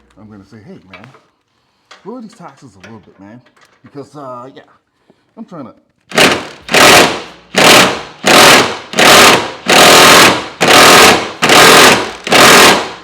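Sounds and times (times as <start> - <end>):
impact wrench hammering: 6.1 - 13.0.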